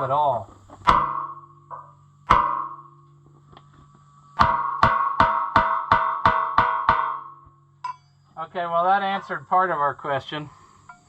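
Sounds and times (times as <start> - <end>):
hammer striking metal wheel rim: 0.8 - 3.3, 4.4 - 8.2.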